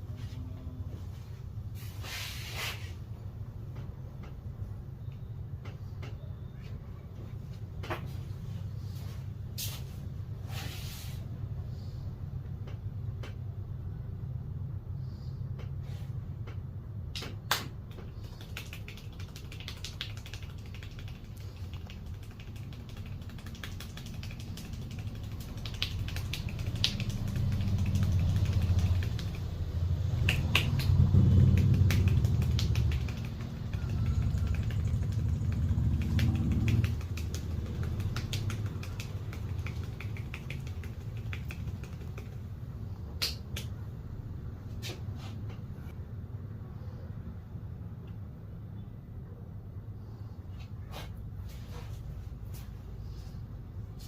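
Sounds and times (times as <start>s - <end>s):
hands slapping and tapping head: 17.1s - 43.8s.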